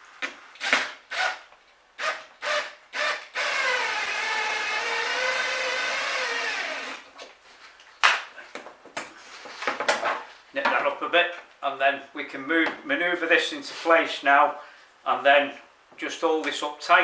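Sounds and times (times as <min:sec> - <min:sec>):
power tool whine: 0:02.0 - 0:07.0.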